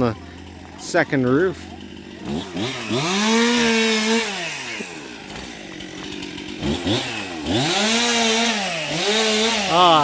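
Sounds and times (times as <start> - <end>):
chainsaw revving: 0.0 - 10.0.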